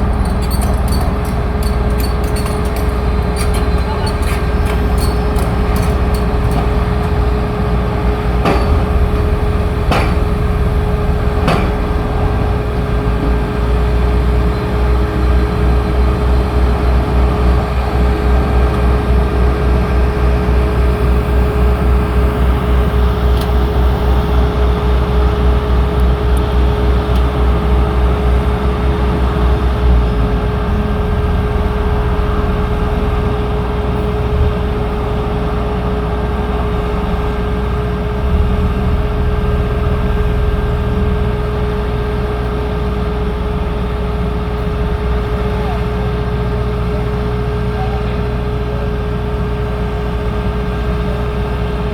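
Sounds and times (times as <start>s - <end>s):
engine rumbling: 0.0s - 51.9s
sharp knocks: 8.3s - 12.2s.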